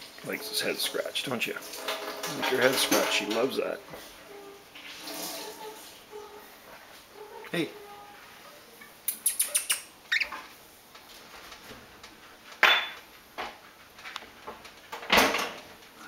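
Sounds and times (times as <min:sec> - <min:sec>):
parrot squawking: 0:08.8 - 0:10.5
parrot clicking: 0:09.1 - 0:10.2.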